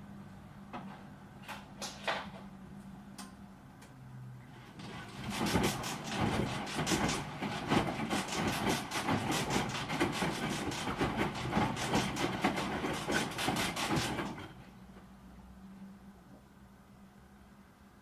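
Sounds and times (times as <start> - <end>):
washing machine rhythmic clatter: 4.5 - 14.9.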